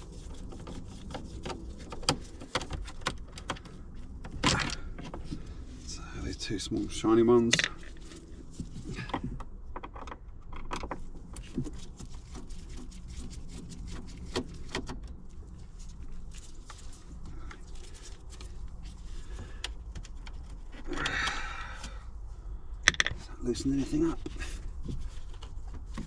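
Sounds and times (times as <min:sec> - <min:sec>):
scraping rustle: 0:11.0 - 0:20.9, 0:23.3 - 0:26.0.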